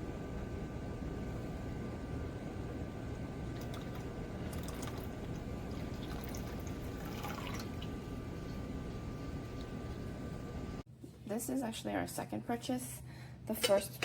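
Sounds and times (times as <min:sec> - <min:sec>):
low hiss and hum: 0:00.0 - 0:14.0
liquid trickling and dripping: 0:03.6 - 0:10.1.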